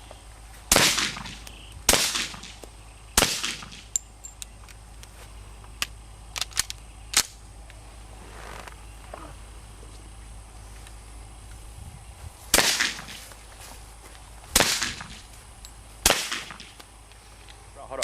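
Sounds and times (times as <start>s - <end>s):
suppressed pistol shots: 0.7s - 2.6s, 3.2s - 3.9s, 12.5s - 13.2s, 14.5s - 15.2s, 16.0s - 16.8s
faint sharp cracks: 12.5s - 13.4s.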